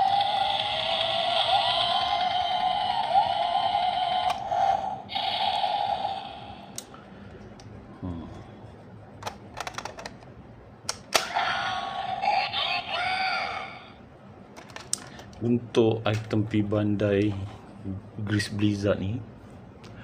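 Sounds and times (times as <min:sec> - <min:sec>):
toy electronic sound effect: 0:00.0 - 0:06.7, 0:11.2 - 0:14.0
plastic toy clicks: 0:09.2 - 0:10.2.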